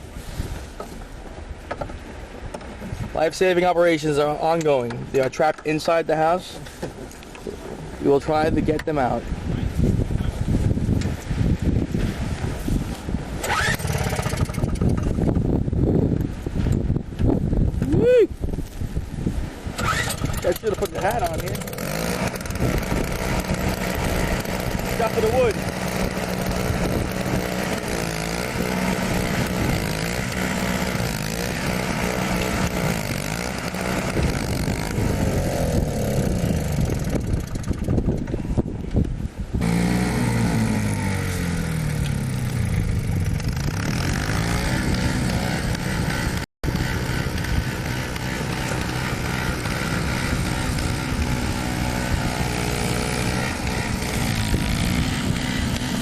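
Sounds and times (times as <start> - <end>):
snowblower engine running: 13.4 - 15.4, 19.8 - 38.3, 39.6 - 56.0.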